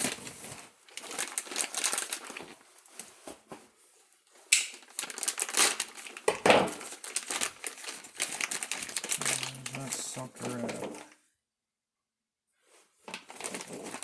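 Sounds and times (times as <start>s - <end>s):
plastic bags crinkling: 0.0s - 3.3s, 4.3s - 11.2s, 13.0s - 14.0s.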